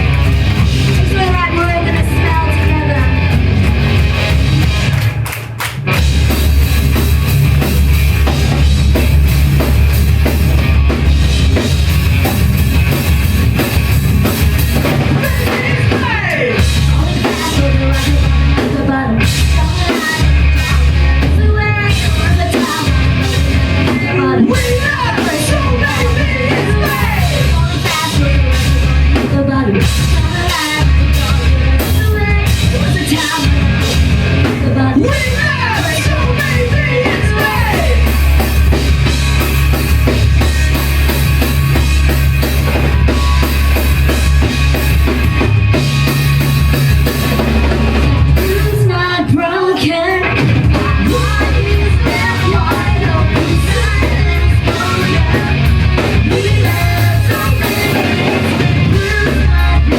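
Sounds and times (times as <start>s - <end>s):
live rock band playing loudly: 0.0s - 59.9s
vocal or lead guitar line: 0.0s - 59.9s.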